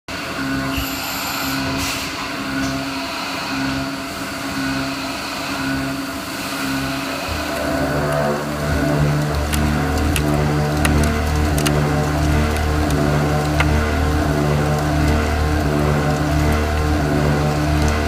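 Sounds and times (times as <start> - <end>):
milling machine cutting metal: 0.2 - 9.4.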